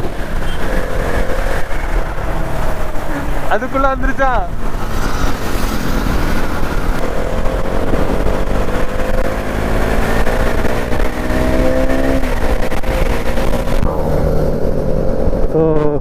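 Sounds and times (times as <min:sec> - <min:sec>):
wind and road noise rumble: 0:00.0 - 0:16.0
motorcycle engine accelerating: 0:04.4 - 0:16.0.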